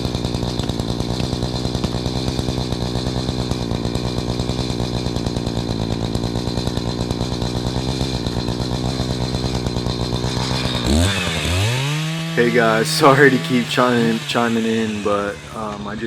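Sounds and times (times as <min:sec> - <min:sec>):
chainsaw running: 0:00.0 - 0:16.0.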